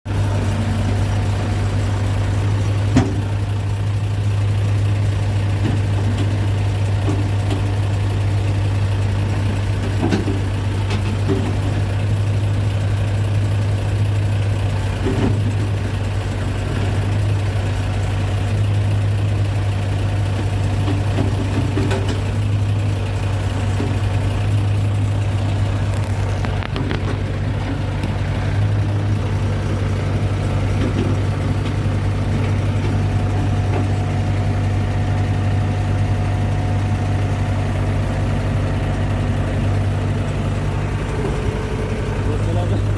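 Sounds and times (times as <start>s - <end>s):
excavator diesel engine droning: 0.0s - 42.9s
knocks and clanks: 2.8s - 3.5s, 5.5s - 7.8s, 9.8s - 11.9s, 15.0s - 15.8s, 20.3s - 22.6s, 25.4s - 28.2s, 30.6s - 34.0s.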